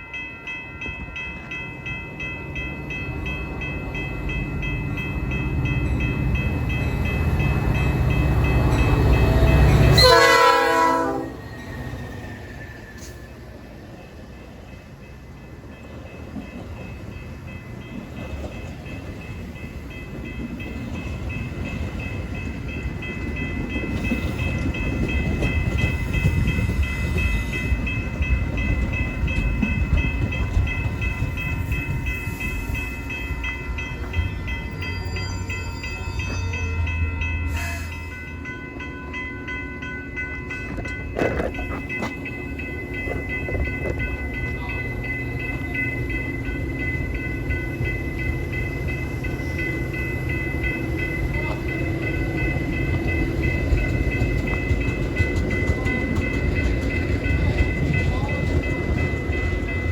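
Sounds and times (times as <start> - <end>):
train rumbling: 0.0 - 59.9
bell ringing: 15.8 - 59.9.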